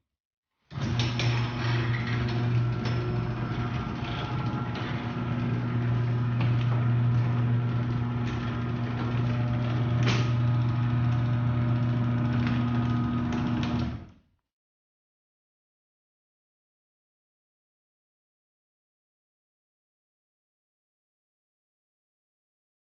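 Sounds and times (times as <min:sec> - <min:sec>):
garage door opener motor hum: 0:00.7 - 0:14.2.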